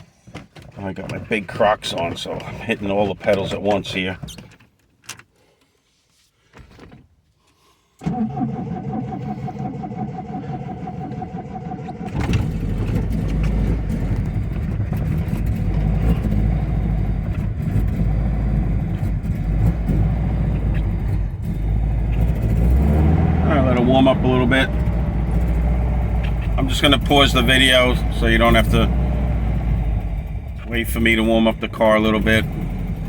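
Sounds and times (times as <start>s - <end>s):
starter motor cranking: 8.0s - 29.3s
car engine idling: 8.1s - 33.0s.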